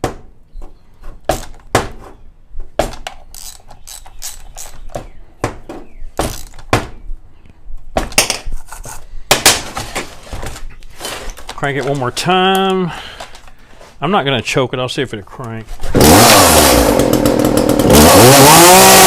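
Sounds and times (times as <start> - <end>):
ratchet turning: 3.3 - 4.8, 6.3 - 6.6.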